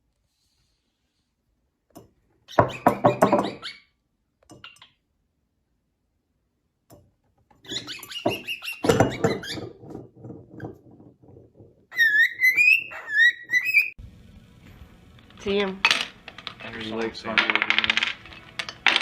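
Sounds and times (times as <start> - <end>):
parrot whistled chirps: 11.9 - 14.0.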